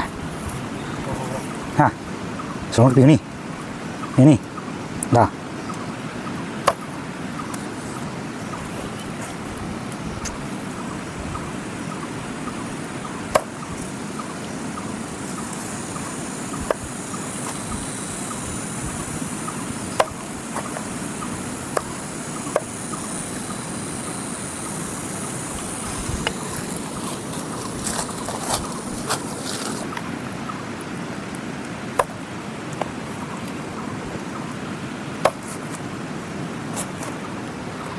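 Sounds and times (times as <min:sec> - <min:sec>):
river rushing: 0:00.0 - 0:37.9
high hiss: 0:07.6 - 0:30.0.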